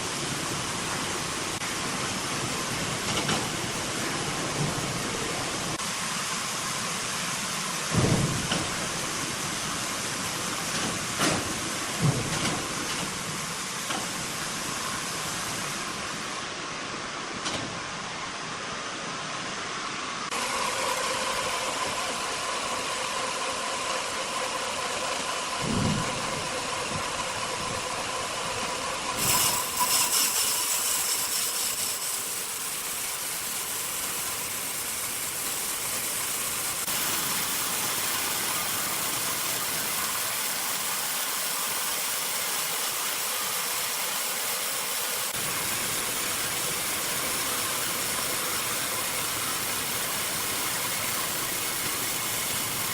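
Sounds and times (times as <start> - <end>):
sawmill machinery running: 0.0 - 52.9
machinery clatter: 2.9 - 5.2, 7.9 - 9.4, 10.6 - 14.2, 25.6 - 39.2
thud: 7.9 - 8.8.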